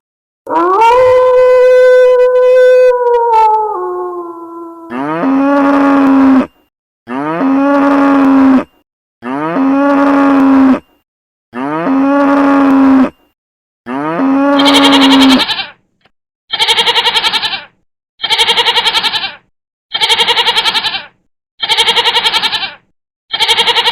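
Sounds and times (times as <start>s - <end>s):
cow mooing: 4.8s - 6.5s, 7.1s - 10.9s, 11.5s - 13.2s, 13.9s - 15.4s
wavering bleating call: 13.9s - 15.8s, 16.5s - 23.9s.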